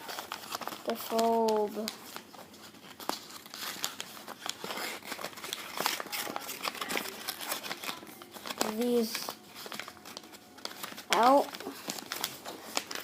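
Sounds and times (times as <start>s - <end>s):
paper being folded and crinkling: 0.0s - 13.0s.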